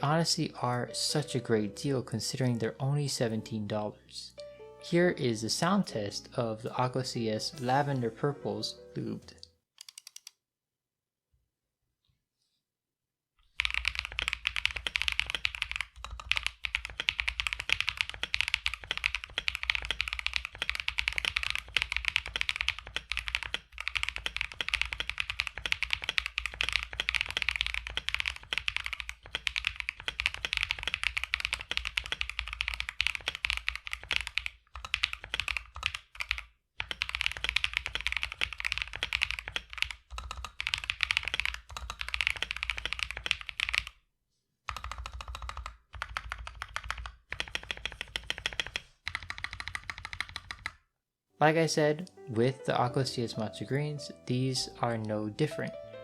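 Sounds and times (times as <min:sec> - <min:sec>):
mechanical keyboard typing: 0:09.8 - 0:10.4, 0:13.6 - 0:44.0, 0:44.7 - 0:50.8.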